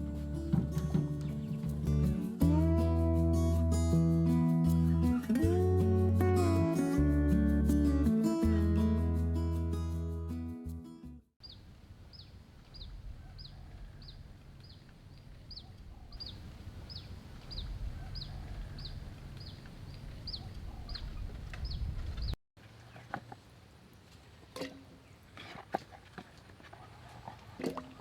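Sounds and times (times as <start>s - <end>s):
bird chirping: 11.4s - 23.0s.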